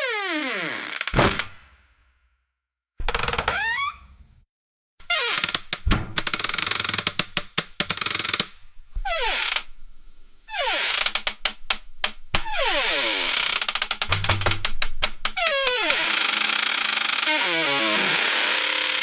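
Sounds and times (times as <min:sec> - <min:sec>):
wooden door creaking on hinges: 0:03.0 - 0:04.0, 0:12.5 - 0:16.2, 0:17.1 - 0:18.6.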